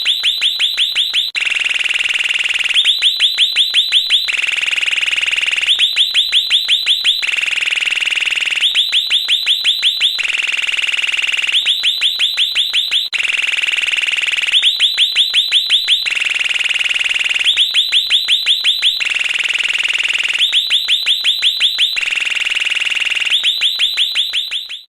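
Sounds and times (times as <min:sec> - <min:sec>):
electronic bird-sound doorbell chirps: 0:23.1 - 0:24.9.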